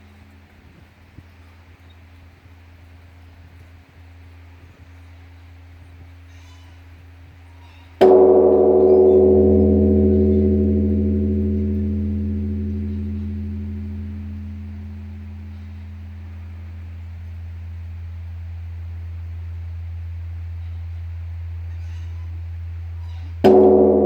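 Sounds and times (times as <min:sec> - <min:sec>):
large bronze bell struck: 0:08.0 - 0:17.9, 0:23.4 - 0:24.0
deep low hum: 0:08.0 - 0:24.0.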